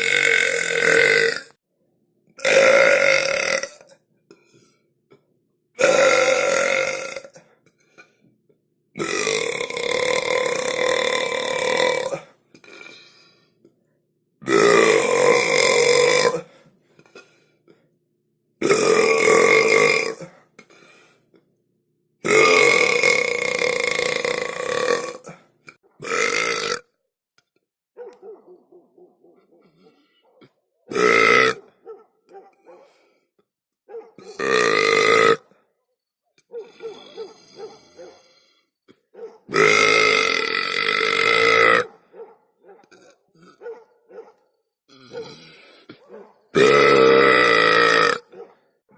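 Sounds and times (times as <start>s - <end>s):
person burping: 0.0s - 1.6s, 2.4s - 8.2s, 9.0s - 13.2s, 14.4s - 17.9s, 18.6s - 21.5s, 22.2s - 27.0s, 30.4s - 31.6s, 34.2s - 35.6s, 38.8s - 41.9s, 42.9s - 43.6s, 44.9s - 48.4s.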